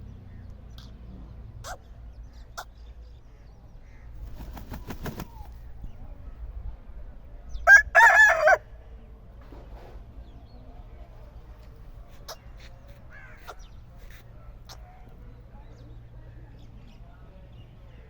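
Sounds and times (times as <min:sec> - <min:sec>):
rooster crowing: 0:07.7 - 0:08.6.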